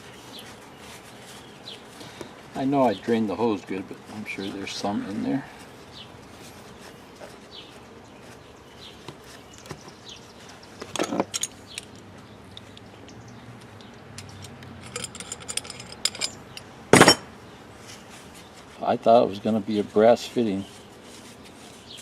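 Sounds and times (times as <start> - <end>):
light metallic clinks: 14.2 - 17.3.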